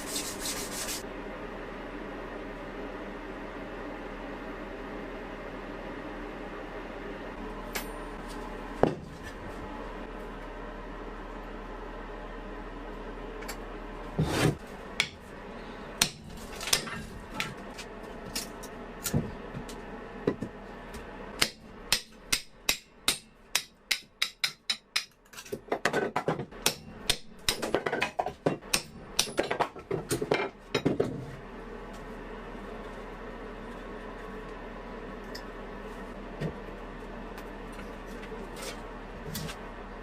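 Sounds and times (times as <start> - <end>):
hammer tapping on metal: 21.4 - 25.2.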